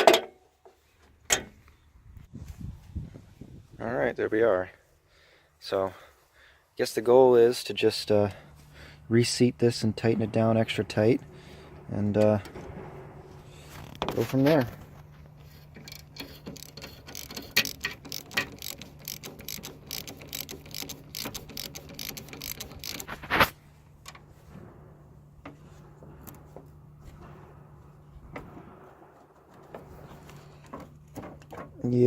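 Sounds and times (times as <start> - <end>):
ratchet wrench clicking: 15.5 - 23.4.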